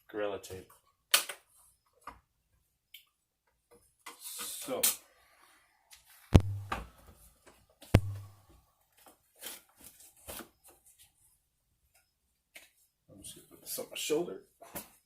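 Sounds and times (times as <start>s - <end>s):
sharp knocks: 6.4s - 6.9s, 8.0s - 8.4s.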